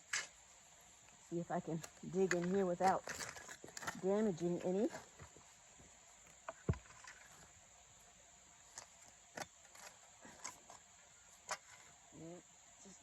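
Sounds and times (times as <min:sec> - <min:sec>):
shovel scraping and thudding in soil: 0:06.5 - 0:07.5.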